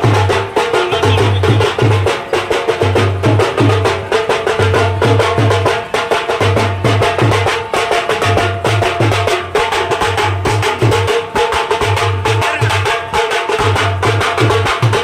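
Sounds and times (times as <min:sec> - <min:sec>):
live band music: 0:00.0 - 0:02.8.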